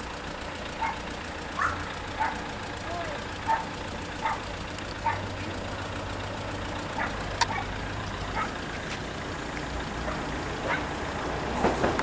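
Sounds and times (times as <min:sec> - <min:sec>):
train engine rumble: 0:00.0 - 0:12.0
train wheels clicking on rails: 0:09.7 - 0:12.0.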